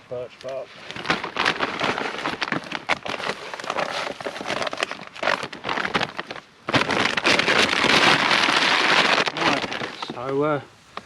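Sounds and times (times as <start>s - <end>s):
bark crackling in fire: 0.4s - 11.0s
steady hiss: 6.4s - 11.0s.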